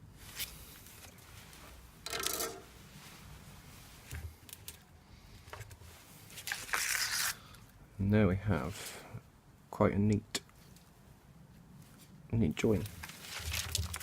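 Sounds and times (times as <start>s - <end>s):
rubbing and rustling: 0.0s - 4.5s, 12.8s - 14.0s.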